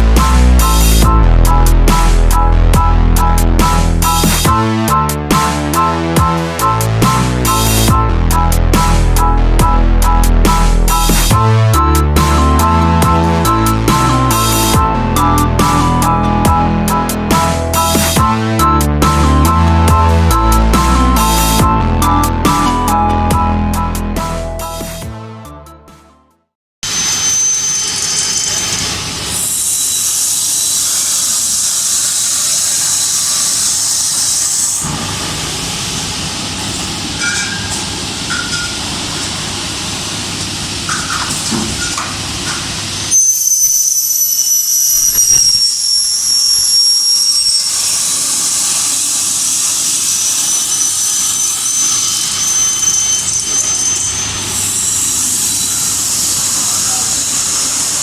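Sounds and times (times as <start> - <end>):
high-pitched spindle whine: 26.8 - 38.8, 43.0 - 58.0
steady hissing: 28.5 - 43.1, 44.3 - 58.0.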